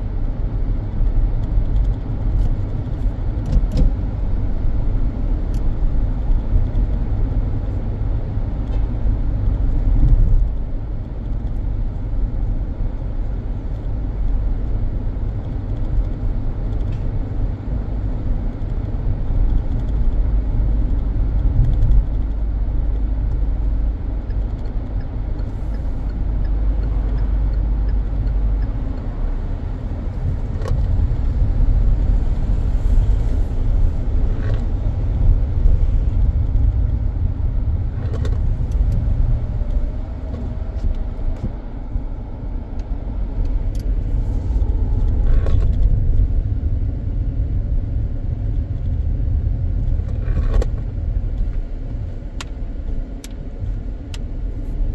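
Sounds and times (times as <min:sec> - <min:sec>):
car engine and tyres rumbling: 0:00.0 - 0:54.9.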